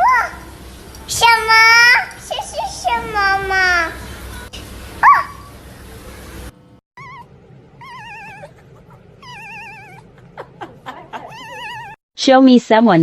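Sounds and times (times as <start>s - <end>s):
cat yowling: 5.0s - 5.4s, 7.0s - 12.0s
cat meowing: 7.0s - 8.6s, 9.2s - 10.1s, 11.2s - 12.0s.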